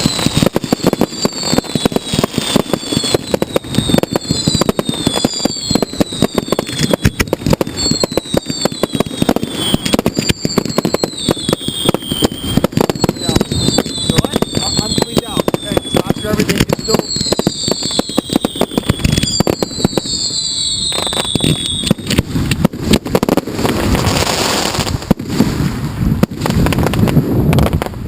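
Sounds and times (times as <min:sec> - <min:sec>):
firework bangs and crackles: 0:00.0 - 0:28.0
firework whistles: 0:00.0 - 0:28.0.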